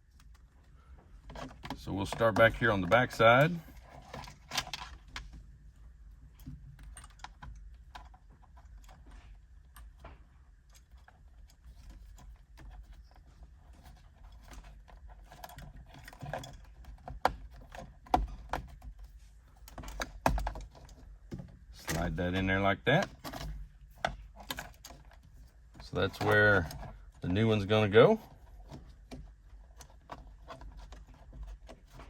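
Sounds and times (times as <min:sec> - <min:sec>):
plastic handling sounds: 0:00.0 - 0:32.0.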